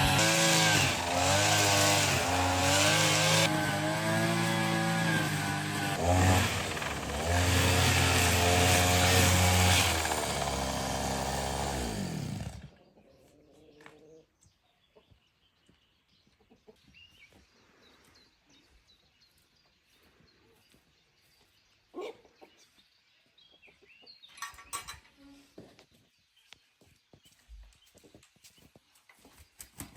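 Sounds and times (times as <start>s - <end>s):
small petrol engine revving: 0.0s - 12.8s.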